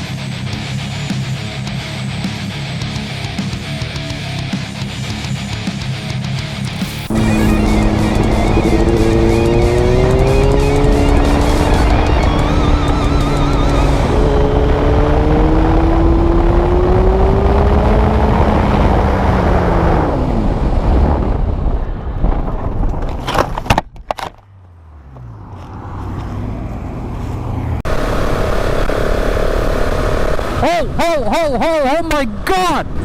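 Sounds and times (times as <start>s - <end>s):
motorcycle engine running: 0.0s - 21.5s
another motorcycle riding: 0.0s - 23.7s, 24.4s - 33.0s
heavy wind noise: 7.2s - 23.8s
motorcycle crash knocks and scrapes: 22.2s - 24.5s.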